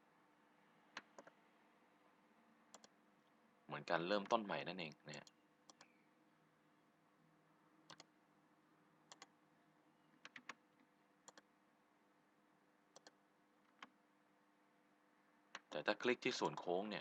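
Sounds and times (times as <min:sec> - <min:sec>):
faint steady hum: 0:00.0 - 0:17.0
computer mouse clicks: 0:00.9 - 0:01.4, 0:02.7 - 0:03.0, 0:05.1 - 0:06.0, 0:07.9 - 0:08.1, 0:09.1 - 0:09.4, 0:10.2 - 0:10.6, 0:11.2 - 0:11.5, 0:12.9 - 0:14.0, 0:15.5 - 0:15.8.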